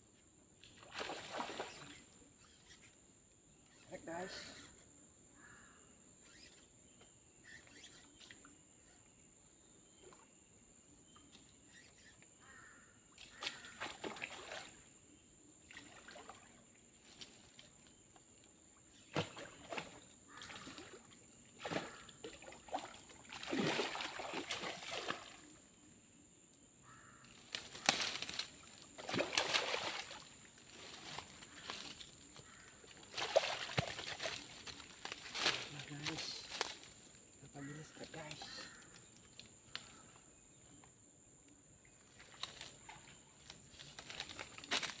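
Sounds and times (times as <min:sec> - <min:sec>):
water splashing and sloshing: 0:00.6 - 0:02.7, 0:13.2 - 0:15.0, 0:15.6 - 0:25.9, 0:27.2 - 0:40.9, 0:41.8 - 0:45.0.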